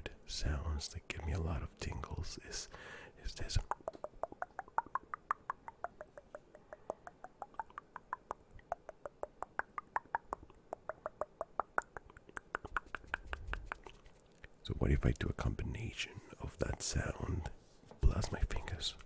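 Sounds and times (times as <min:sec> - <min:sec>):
rapid tongue clicks: 0:03.4 - 0:14.5.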